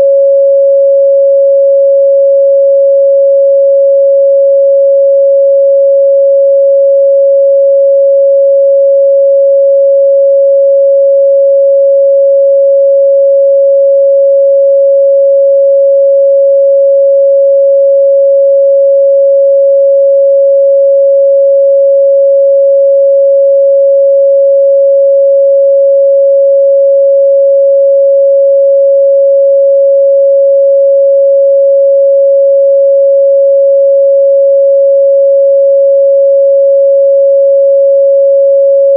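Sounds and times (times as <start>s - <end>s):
sine-wave test tone: 0.0s - 38.9s.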